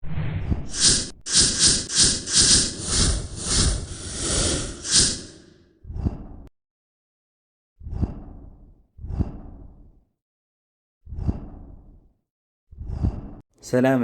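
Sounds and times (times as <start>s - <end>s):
swishing whoosh effects: 0.0s - 5.5s.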